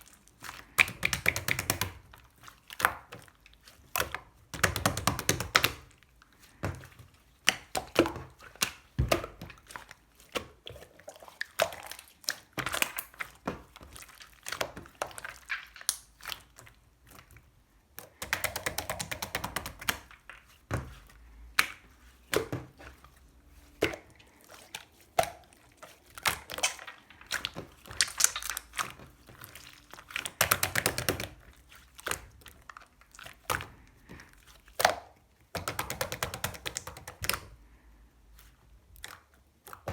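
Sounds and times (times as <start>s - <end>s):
slime squishing: 0.0s - 39.9s
slime popping: 25.0s - 32.4s.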